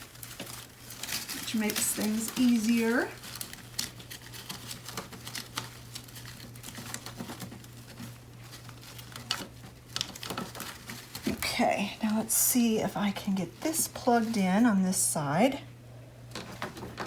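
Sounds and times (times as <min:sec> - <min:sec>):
garland rustling and crackling: 0:00.0 - 0:12.7.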